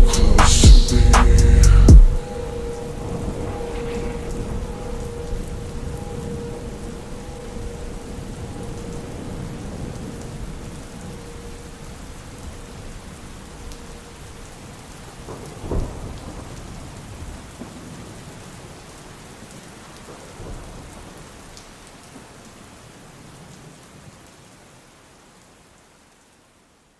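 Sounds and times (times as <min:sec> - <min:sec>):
thunder clap: 0:00.0 - 0:06.4
thunder rumble: 0:00.0 - 0:13.7, 0:15.2 - 0:18.0
steady rain: 0:00.0 - 0:26.9.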